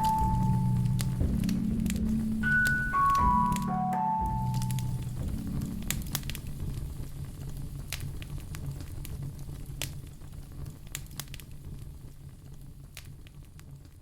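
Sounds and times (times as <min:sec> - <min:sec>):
fire crackles and pops: 0:00.0 - 0:03.7, 0:04.4 - 0:14.0
fire flames rumbling: 0:04.8 - 0:14.0.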